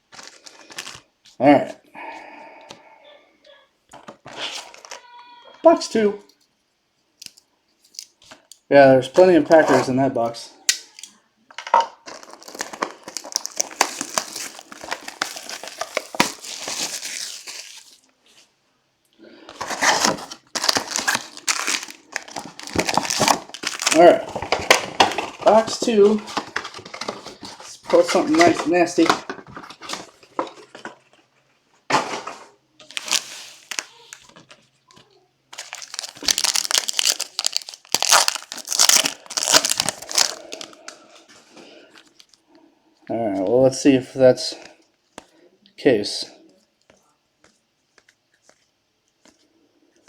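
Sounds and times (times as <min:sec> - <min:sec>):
plastic wrapping crinkling: 0:00.0 - 0:01.4, 0:03.9 - 0:06.1, 0:10.9 - 0:18.5, 0:19.5 - 0:31.4, 0:32.8 - 0:42.5.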